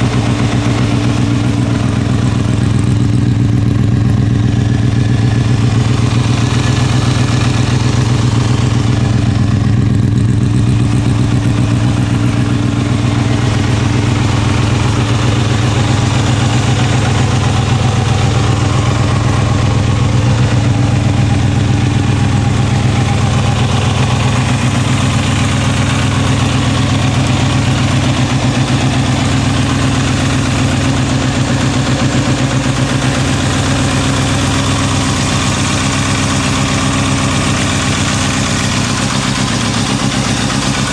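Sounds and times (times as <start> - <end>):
motorcycle engine idling: 0.0 - 40.9.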